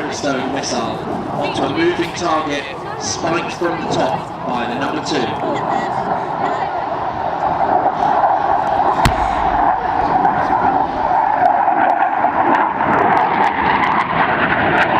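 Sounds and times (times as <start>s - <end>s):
jet engine roar: 6.3s - 14.9s
sharp bang: 9.0s - 12.1s.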